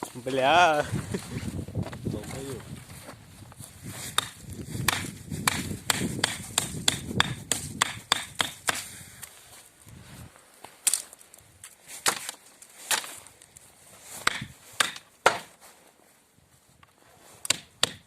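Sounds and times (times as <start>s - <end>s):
axe chopping wood: 4.1s - 8.9s, 12.0s - 13.1s, 14.2s - 15.6s, 17.4s - 18.0s.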